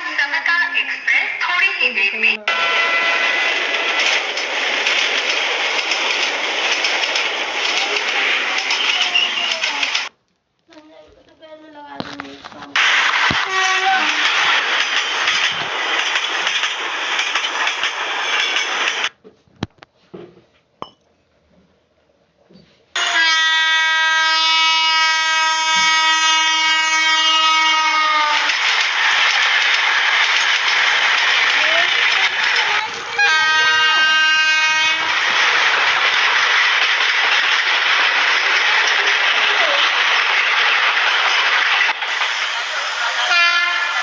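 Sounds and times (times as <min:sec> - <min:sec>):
train rushing past: 0:00.0 - 0:10.1, 0:12.7 - 0:19.2, 0:23.0 - 0:44.0
train horn blast: 0:02.5 - 0:03.4, 0:23.0 - 0:28.4, 0:33.2 - 0:35.1, 0:43.3 - 0:44.0.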